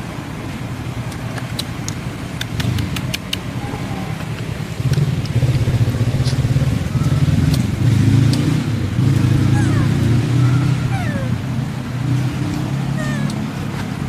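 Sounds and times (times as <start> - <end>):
engine running with rough hum: 0.0 - 14.0
sharp clicks: 1.1 - 3.5.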